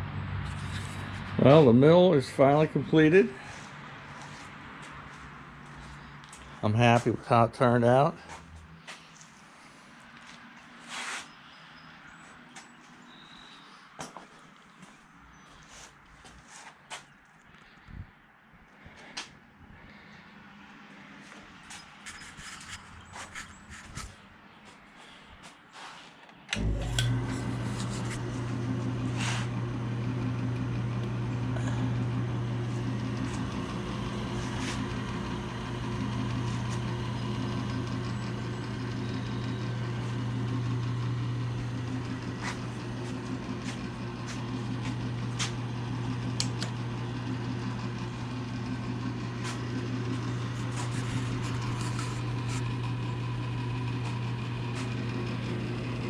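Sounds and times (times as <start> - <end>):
milling machine motor humming: 26.5 - 56.0.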